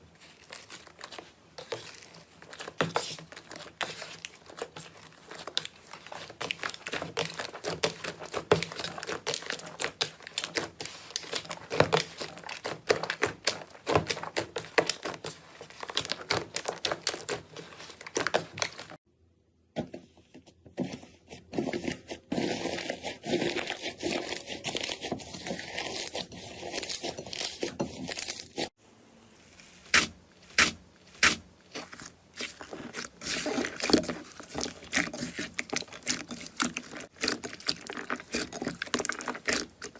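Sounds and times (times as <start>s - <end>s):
slime crackling and popping: 0.2s - 19.0s, 29.8s - 39.9s.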